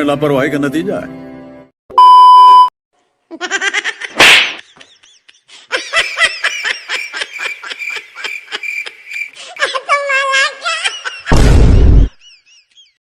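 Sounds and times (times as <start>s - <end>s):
short loud beep tone: 1.9s - 2.7s
fast repeated laughter: 3.4s - 11.3s
sharp slap: 4.2s - 4.7s.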